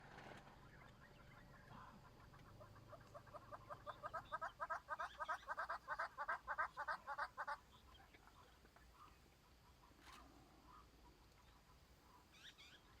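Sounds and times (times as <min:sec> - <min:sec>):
bird clucking call: 0:00.6 - 0:10.0.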